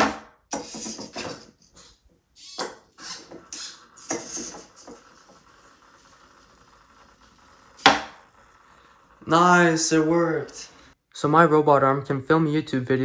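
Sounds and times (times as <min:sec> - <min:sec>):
servo motors whirring: 0:02.4 - 0:08.8.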